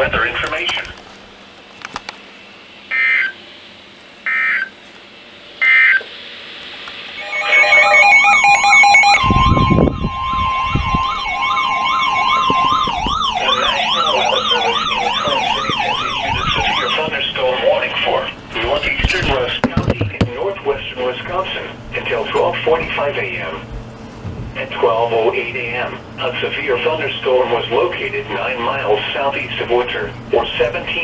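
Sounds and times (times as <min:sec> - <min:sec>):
loud steady high tone: 0:02.4 - 0:20.5
fast warbling siren-like tone: 0:02.9 - 0:03.4, 0:04.2 - 0:04.8, 0:05.6 - 0:06.1, 0:07.1 - 0:18.2
digital data chirps: 0:05.6 - 0:06.1, 0:06.7 - 0:17.6.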